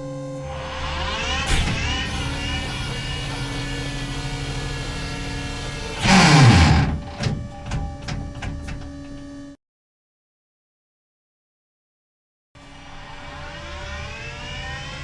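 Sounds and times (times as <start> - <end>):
lingering hum: 0.0 - 9.6
turret mechanism whine: 0.4 - 9.6.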